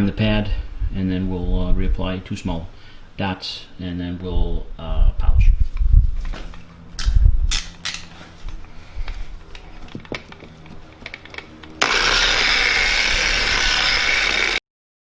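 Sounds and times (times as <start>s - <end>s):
handling clicks and taps: 9.5s - 11.8s
polisher whirring: 10.0s - 14.6s.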